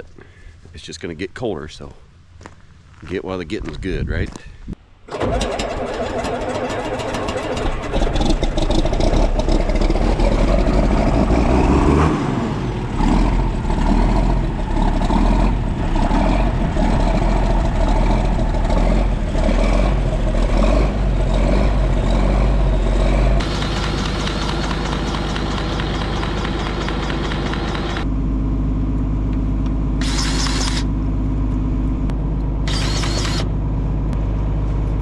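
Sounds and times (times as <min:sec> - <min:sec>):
engine starting and humming: 0:05.0 - 0:28.2, 0:30.0 - 0:31.2, 0:32.6 - 0:34.1.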